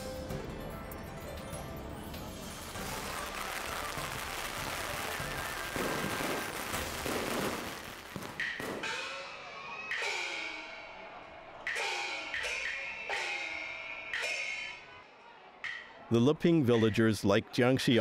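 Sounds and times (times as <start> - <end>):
dense burst of noise: 2.8 - 8.2.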